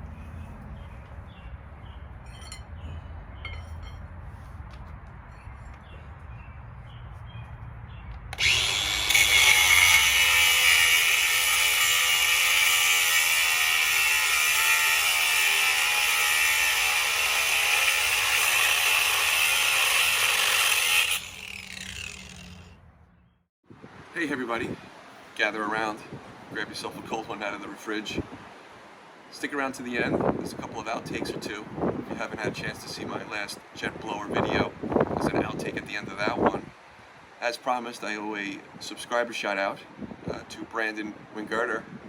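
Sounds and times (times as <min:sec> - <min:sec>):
angle grinder cutting steel: 0:08.3 - 0:22.8.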